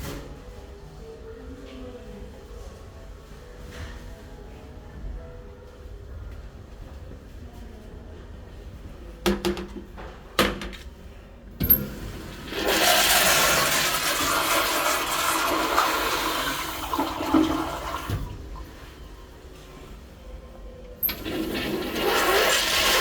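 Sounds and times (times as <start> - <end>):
toilet flush clicks: 11.6 - 18.5, 21.0 - 23.0.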